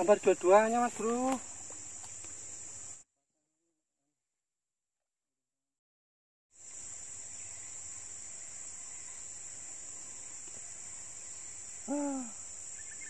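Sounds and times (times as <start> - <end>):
high-pitched insect drone: 0.0 - 3.0, 6.6 - 13.0.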